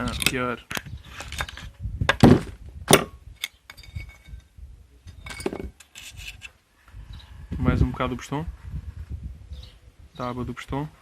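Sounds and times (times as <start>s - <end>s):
metal clinks and knocks: 2.9s - 4.5s, 5.1s - 6.5s.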